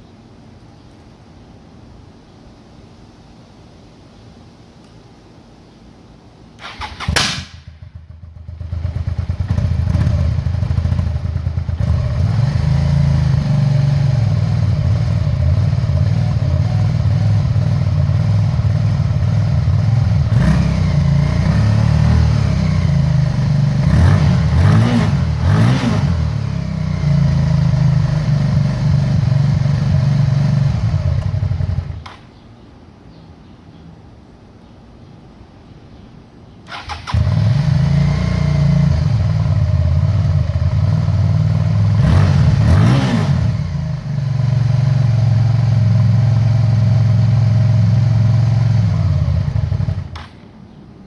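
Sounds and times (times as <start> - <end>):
motorcycle starter cranking: 6.6 - 7.3, 36.7 - 37.6
motorcycle engine running misfiring: 6.6 - 32.3, 36.7 - 50.5.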